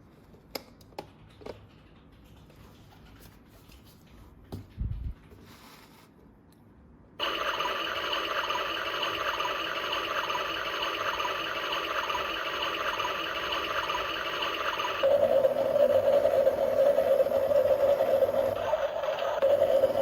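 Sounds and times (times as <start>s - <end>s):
small electric motor running: 7.2s - 20.0s.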